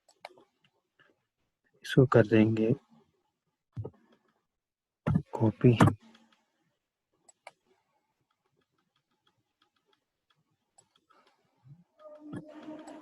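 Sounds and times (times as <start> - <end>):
computer mouse clicks: 7.3 - 13.0.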